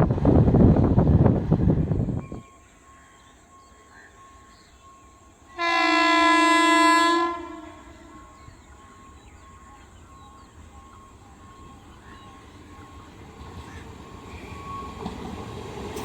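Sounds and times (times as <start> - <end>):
locomotive horn blast: 5.5 - 8.6
train wheels rattling: 7.9 - 16.0.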